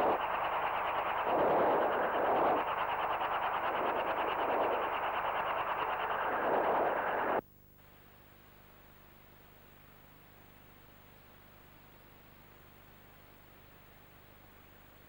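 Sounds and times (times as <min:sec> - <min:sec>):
helicopter rotors chopping: 0:00.0 - 0:07.4
faint low hum: 0:00.0 - 0:15.0.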